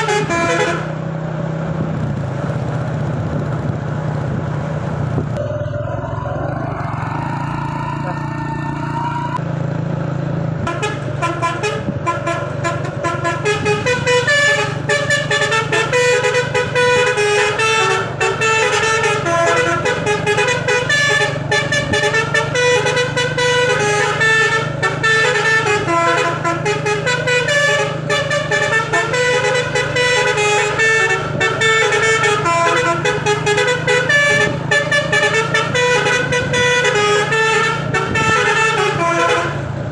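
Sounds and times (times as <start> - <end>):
multi-tone air horn tune: 0.0 - 1.0, 10.7 - 39.8
truck engine low hum: 0.0 - 39.9.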